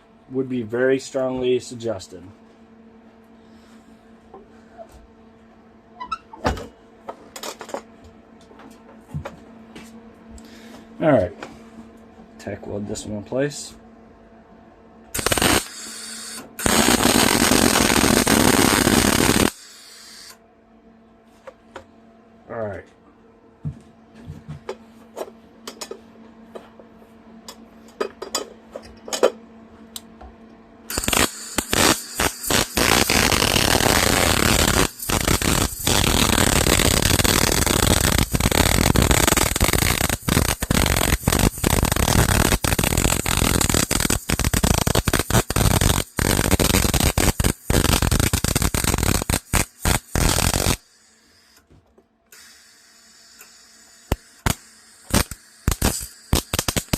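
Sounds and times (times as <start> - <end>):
steady hum: 0.0 - 56.9
welding arc crackling and sizzling: 15.2 - 20.4, 30.9 - 51.1, 52.8 - 56.9.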